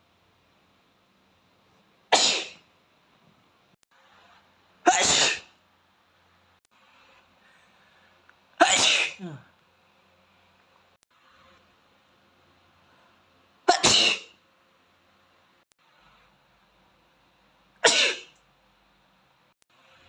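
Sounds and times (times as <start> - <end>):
boy sneezing: 8.6 - 9.4.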